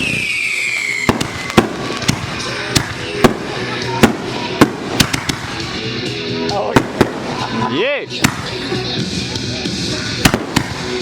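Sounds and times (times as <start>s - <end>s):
firework bangs: 0.0s - 5.9s, 6.7s - 8.8s, 10.2s - 11.0s
fireworks crackling: 0.0s - 11.0s.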